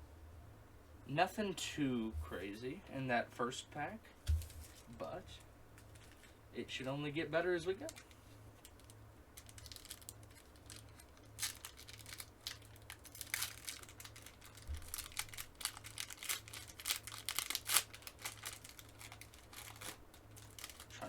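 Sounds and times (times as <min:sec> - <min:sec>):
faint low hum: 0:00.0 - 0:21.0
wrapper tearing and crinkling: 0:07.8 - 0:21.0.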